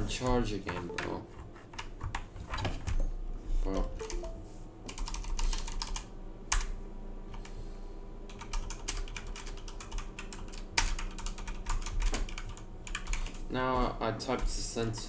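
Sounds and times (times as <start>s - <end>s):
mechanical keyboard typing: 0.2s - 3.0s, 3.8s - 6.7s, 8.3s - 13.4s.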